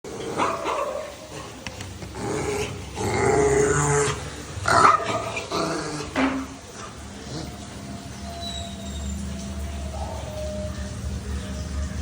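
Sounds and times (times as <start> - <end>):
dog growling and barking: 0.1 - 6.5.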